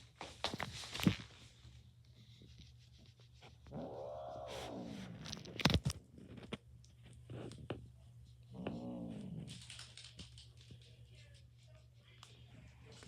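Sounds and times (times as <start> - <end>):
cat meowing: 3.7 - 5.0.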